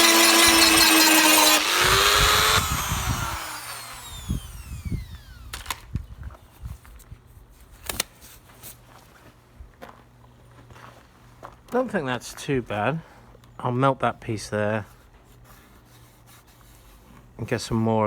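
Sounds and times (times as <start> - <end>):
rotary tool whining: 0.0 - 5.9.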